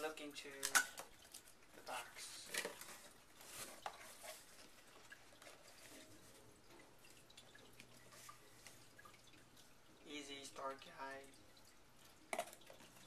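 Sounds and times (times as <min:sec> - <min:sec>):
cardboard box rustling: 0:02.5 - 0:06.2.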